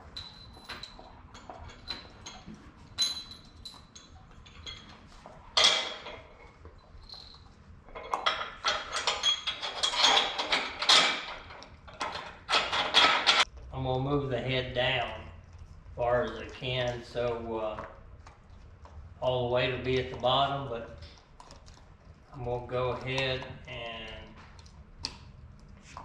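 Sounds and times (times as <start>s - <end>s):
metal hardware clinking: 0.0s - 13.5s.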